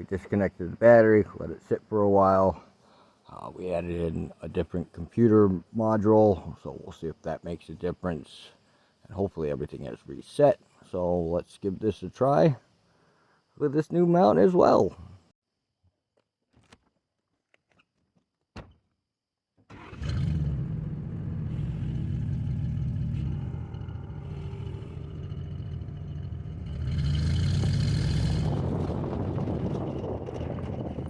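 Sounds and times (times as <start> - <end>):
engine running low rumble: 19.8 - 31.0.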